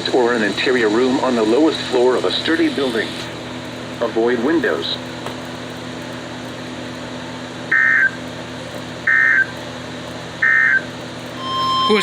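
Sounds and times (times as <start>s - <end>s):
low background hum: 0.0s - 12.0s
warbling digital data tone bursts: 10.4s - 12.0s.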